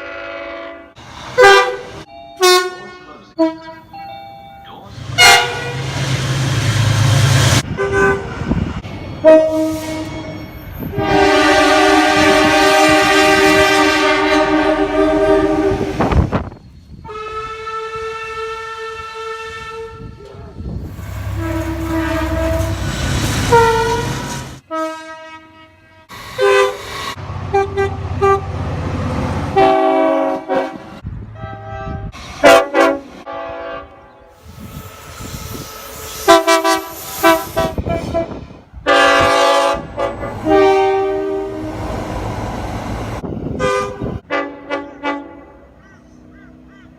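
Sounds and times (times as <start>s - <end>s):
short train horn toots: 0.0s - 3.9s, 5.2s - 6.0s, 7.7s - 8.4s, 9.2s - 16.2s, 17.0s - 20.3s, 21.0s - 26.9s, 29.6s - 41.8s, 43.5s - 45.5s
train horn blasts: 0.0s - 3.9s, 5.2s - 6.1s, 7.3s - 8.5s, 9.2s - 16.4s, 17.0s - 28.6s, 29.5s - 42.0s, 43.2s - 45.6s
train rumbling past: 0.0s - 46.9s.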